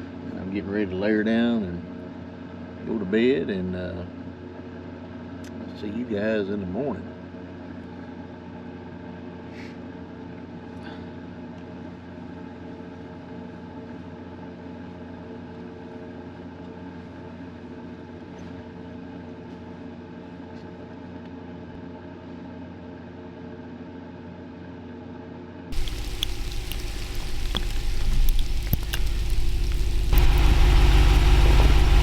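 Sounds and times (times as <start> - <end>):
faint ticks: 25.8 - 32.0
motor humming: 25.8 - 32.0.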